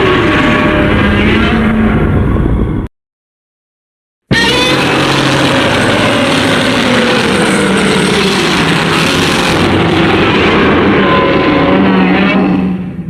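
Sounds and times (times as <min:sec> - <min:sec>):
monster roar: 0:04.3 - 0:12.8.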